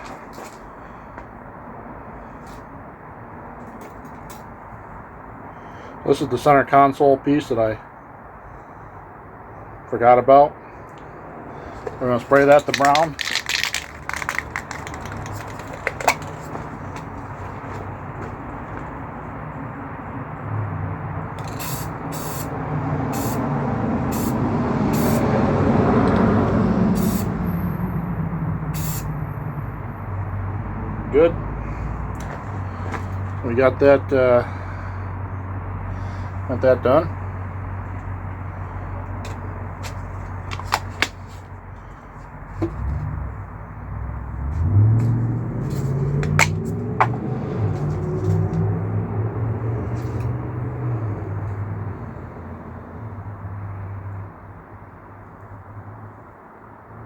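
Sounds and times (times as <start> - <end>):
vehicle engine rumbling: 7.7 - 56.9
spray paint can hissing: 12.7 - 15.8, 21.4 - 22.5, 23.1 - 23.5, 24.1 - 25.3, 27.0 - 27.3, 28.7 - 29.2.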